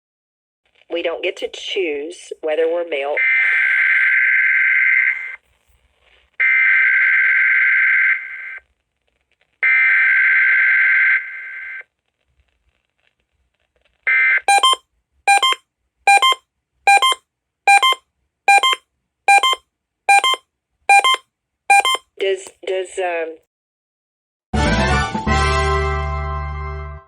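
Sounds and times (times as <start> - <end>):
harsh digital data squawk: 14.5 - 22.0
short sharp alert beeps: 14.5 - 22.0.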